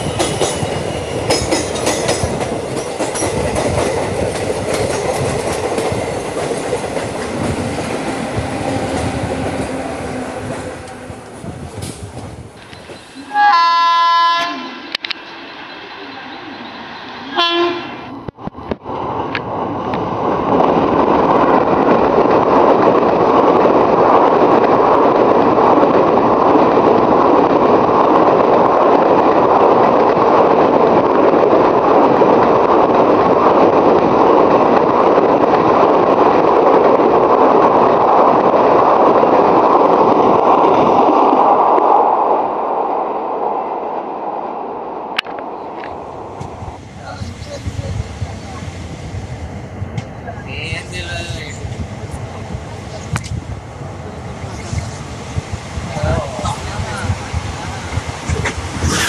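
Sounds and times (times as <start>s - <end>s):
train wheels on rails: 0.0s - 42.6s, 45.1s - 59.0s
locomotive horn: 13.2s - 14.9s, 17.3s - 18.1s.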